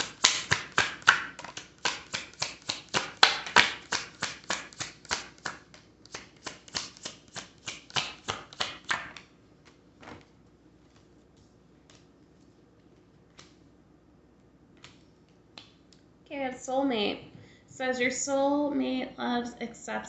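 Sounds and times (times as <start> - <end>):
cards being shuffled: 0.0 - 13.7, 14.7 - 15.8.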